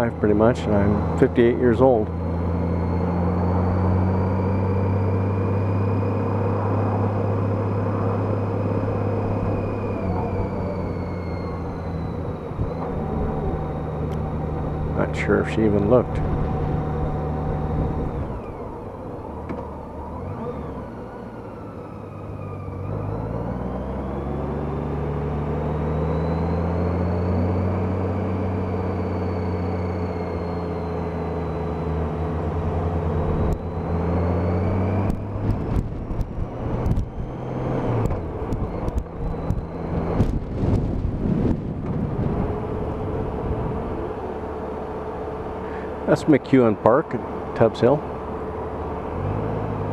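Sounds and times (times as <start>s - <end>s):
motorcycle engine pulling away: 0.0s - 46.2s
wind gusts on microphone: 38.2s - 44.1s.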